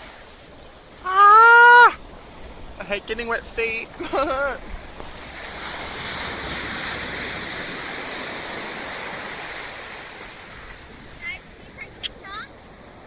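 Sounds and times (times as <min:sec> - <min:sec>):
ocean wave breaking on shore: 0:00.0 - 0:13.0.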